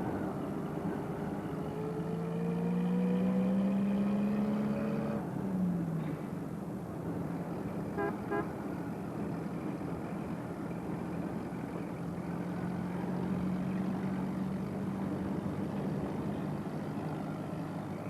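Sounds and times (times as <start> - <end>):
car horn toots: 7.9 - 8.6.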